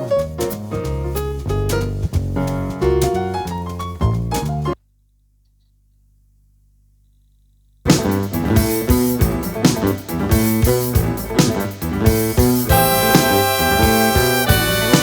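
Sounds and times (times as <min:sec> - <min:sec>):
jazz band with guitar and drums: 0:00.0 - 0:04.8, 0:07.9 - 0:15.0
long held horn notes: 0:12.7 - 0:15.0.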